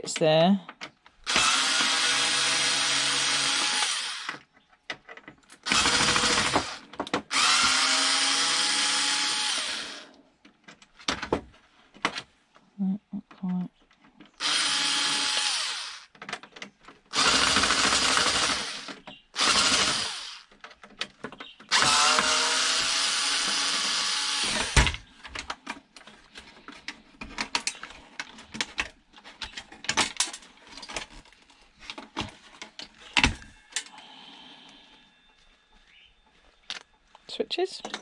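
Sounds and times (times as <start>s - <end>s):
cordless drill running: 1.2s - 4.4s, 5.6s - 10.1s, 14.4s - 16.1s, 17.1s - 20.5s, 21.7s - 25.0s
clicks and knocks of parts handled: 4.3s - 5.6s, 16.1s - 17.1s, 20.5s - 21.8s, 25.1s - 34.0s.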